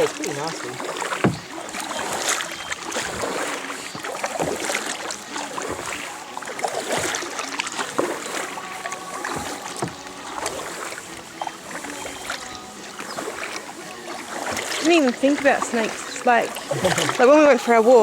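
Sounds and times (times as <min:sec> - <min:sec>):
paddles splashing in water: 0:00.0 - 0:18.0
water dripping: 0:00.0 - 0:18.0.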